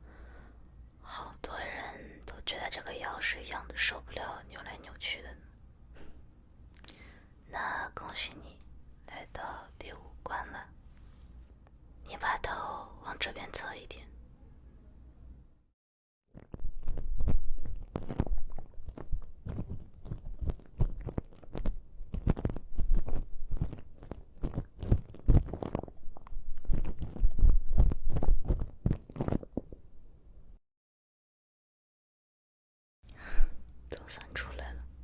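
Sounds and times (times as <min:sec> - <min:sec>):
earwax crackling: 0:16.4 - 0:29.8.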